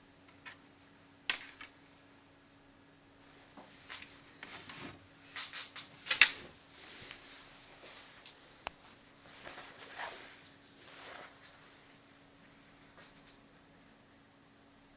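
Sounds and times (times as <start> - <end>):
faint steady hum: 0.0 - 14.9
rustling: 3.7 - 12.0.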